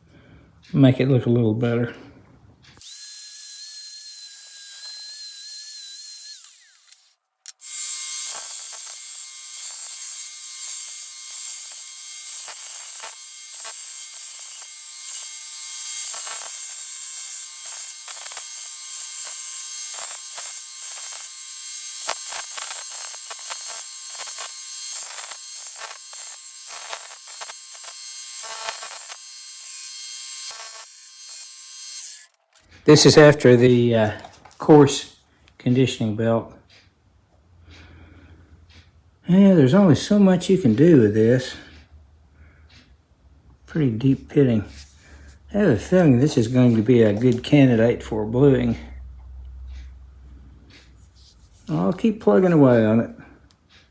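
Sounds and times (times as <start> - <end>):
belt sander whine: 4.1 - 33.9.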